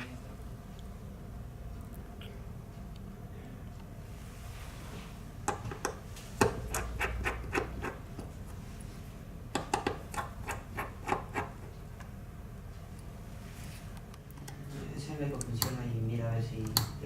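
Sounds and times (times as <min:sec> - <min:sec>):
steady low hum: 0:00.0 - 0:17.0
sharp clicks and knocks: 0:09.5 - 0:12.2.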